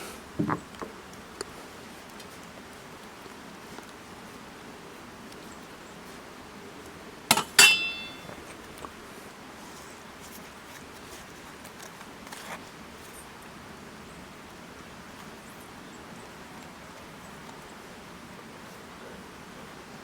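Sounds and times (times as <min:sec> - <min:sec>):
kitchenware knocking: 0:07.3 - 0:08.3
ringing clink: 0:07.3 - 0:08.3.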